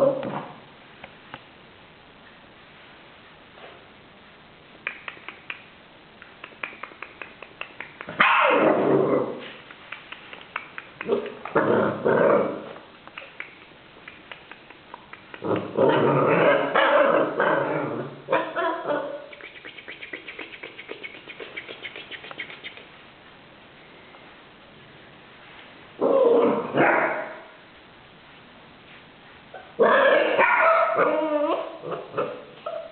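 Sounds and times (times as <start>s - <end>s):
light rapid clicking: 4.8s - 8.2s, 9.6s - 11.6s, 13.0s - 15.7s.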